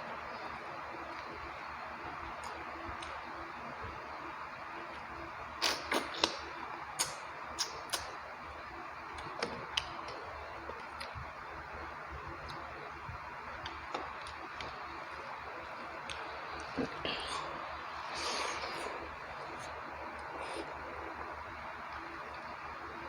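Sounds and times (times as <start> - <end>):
wet chewing and mouth clicks: 5.0 - 6.4, 7.0 - 8.2
steady hiss: 14.8 - 23.0.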